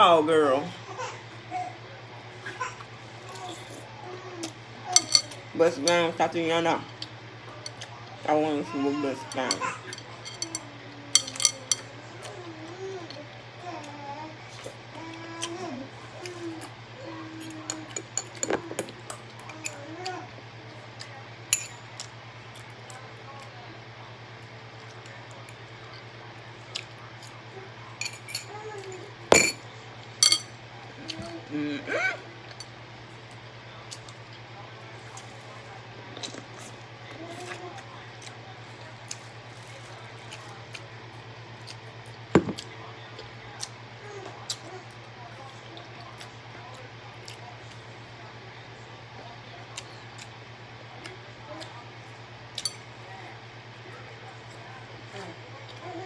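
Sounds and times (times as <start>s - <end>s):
utensils clinking on dishes: 4.9s - 6.1s, 8.9s - 12.0s, 17.4s - 19.9s, 21.5s - 22.1s, 28.0s - 31.3s, 52.6s - 52.9s.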